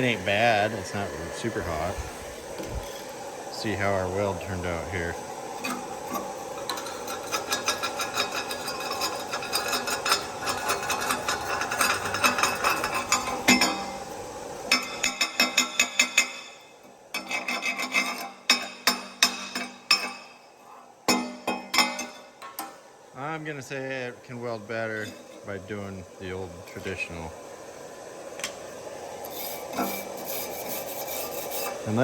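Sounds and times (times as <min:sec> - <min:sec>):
wire brush scraping steel: 0:04.6 - 0:22.8, 0:24.8 - 0:25.6, 0:29.2 - 0:32.0.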